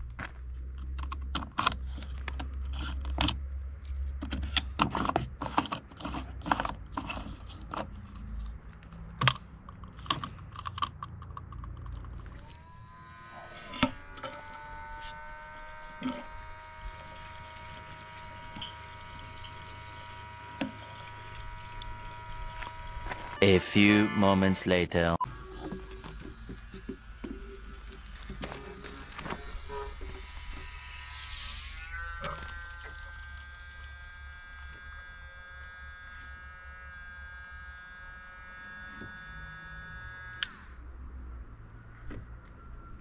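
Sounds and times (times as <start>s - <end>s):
electric pump motor whining: 12.0s - 24.4s, 25.2s - 40.9s.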